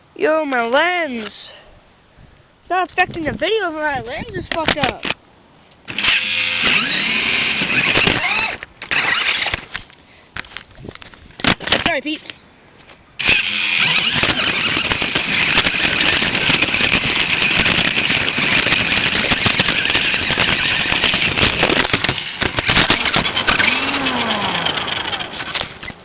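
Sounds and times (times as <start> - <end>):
tyres grinding over ground: 5.8 - 26.0
toy car motor whining: 5.9 - 9.7, 13.2 - 26.0.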